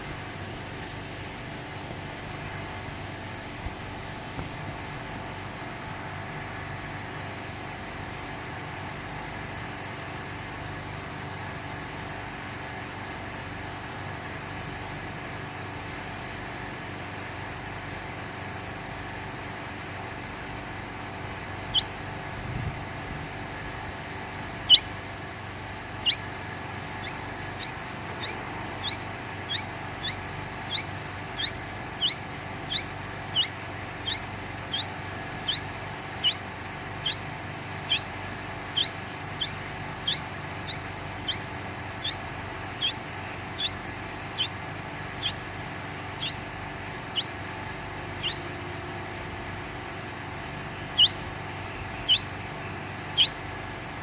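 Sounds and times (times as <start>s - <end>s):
baby bird cheeping: 21.5s - 48.6s, 50.4s - 53.6s.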